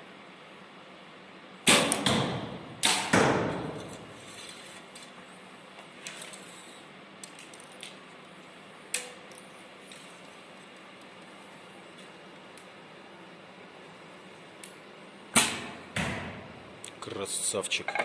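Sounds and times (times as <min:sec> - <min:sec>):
bow shot cracks: 0:01.7 - 0:03.8, 0:15.4 - 0:16.4.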